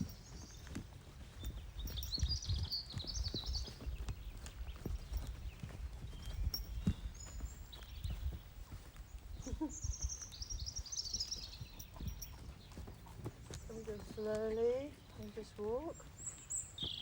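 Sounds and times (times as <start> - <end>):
bird chirping: 0.0 - 17.0
horse hooves on soft ground: 0.0 - 17.0.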